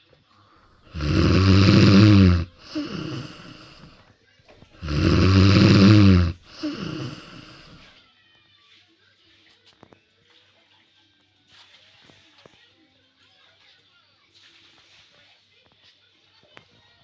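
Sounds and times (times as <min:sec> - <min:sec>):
cat snoring: 0:00.9 - 0:03.9, 0:04.8 - 0:07.8
soft breath: 0:00.9 - 0:04.0, 0:04.8 - 0:07.9.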